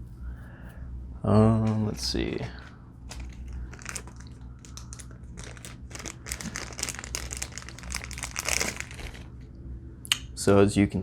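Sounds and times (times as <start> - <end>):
plastic packaging crinkling: 3.0 - 9.4.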